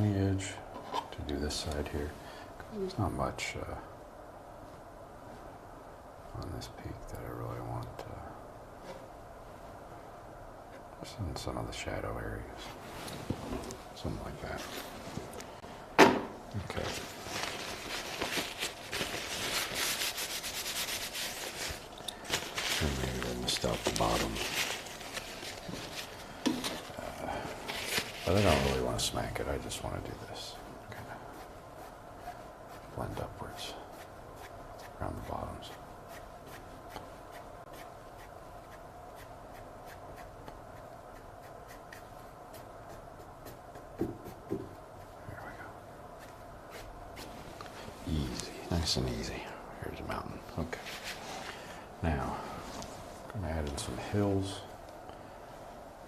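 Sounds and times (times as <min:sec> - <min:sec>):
steady hum: 0:00.0 - 0:56.0
paintbrush tapping on canvas: 0:43.3 - 0:44.8
dull knock: 0:44.0 - 0:44.7.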